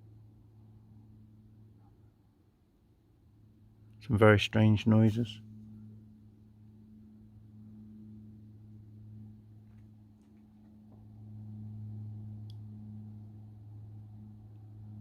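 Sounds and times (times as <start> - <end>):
low droning hum: 0.0 - 15.0.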